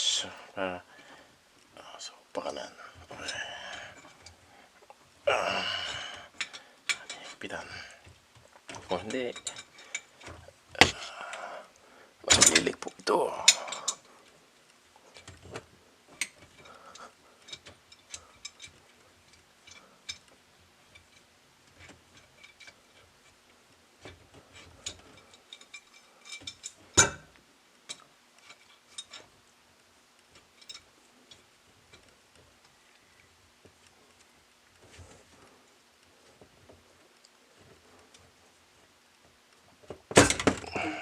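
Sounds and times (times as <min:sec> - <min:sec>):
metal clank: 0:12.3 - 0:12.9, 0:24.5 - 0:27.3, 0:40.1 - 0:41.0.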